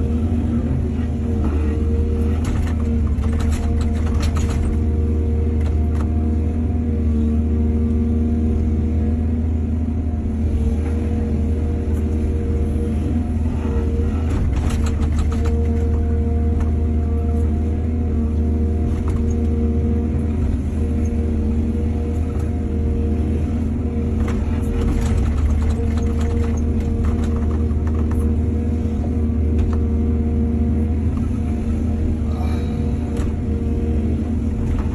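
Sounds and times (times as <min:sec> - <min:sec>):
excavator diesel engine running: 0:00.0 - 0:34.9
sharp clattering of excavator: 0:02.2 - 0:05.0, 0:14.1 - 0:16.7, 0:24.2 - 0:28.3, 0:34.5 - 0:34.9.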